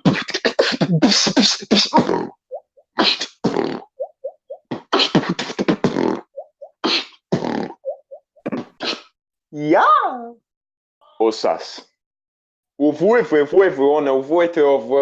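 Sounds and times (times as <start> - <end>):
person beatboxing: 0.0 - 2.4, 3.0 - 3.9, 4.6 - 9.1.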